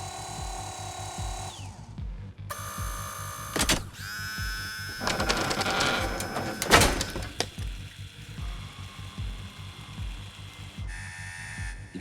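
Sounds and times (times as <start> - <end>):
robot whirring electronically: 4.8 - 7.6.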